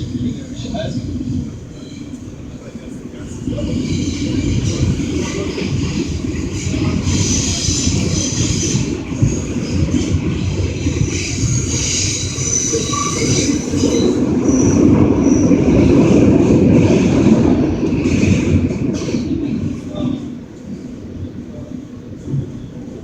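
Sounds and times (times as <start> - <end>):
train wheels rumbling on rails: 0.0 - 23.0
high-pitched wheel squeal: 11.2 - 15.4.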